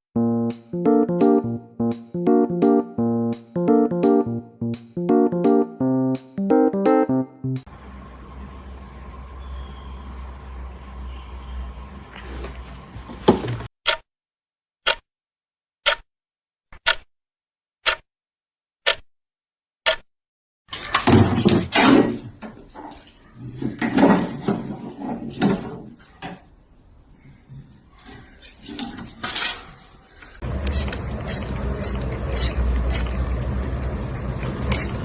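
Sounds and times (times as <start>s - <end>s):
busy noisy sound: 7.7s - 13.7s, 30.4s - 35.0s
clock ticking: 13.8s - 14.0s, 14.8s - 15.0s, 15.8s - 16.1s, 16.8s - 17.1s, 17.8s - 18.0s, 18.8s - 19.0s, 19.8s - 20.0s.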